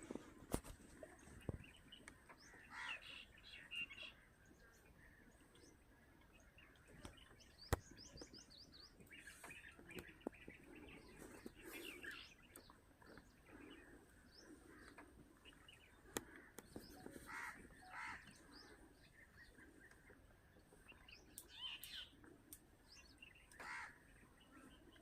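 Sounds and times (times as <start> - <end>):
wild birds chirping: 0.0 - 25.0.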